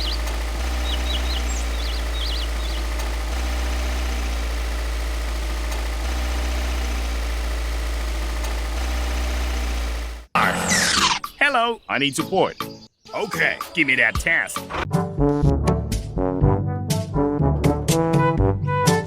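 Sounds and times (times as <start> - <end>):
bird chirps: 0.0 - 3.3, 10.9 - 13.7
engine idling: 0.0 - 10.3.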